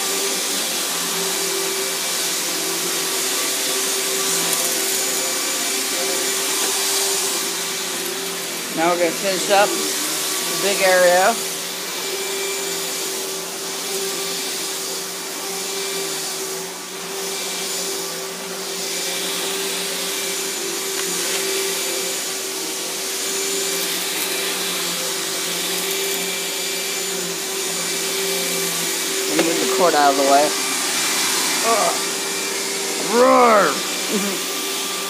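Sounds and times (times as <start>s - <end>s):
vacuum cleaner running: 0.0s - 35.0s.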